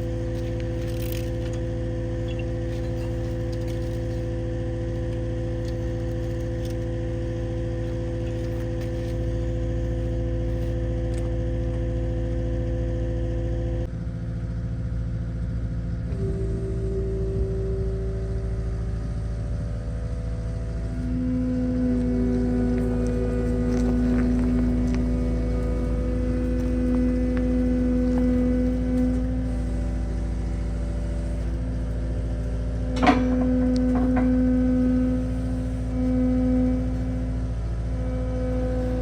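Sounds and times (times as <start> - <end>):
engine running steadily: 0.0 - 39.0
higher steady tone: 16.1 - 39.0.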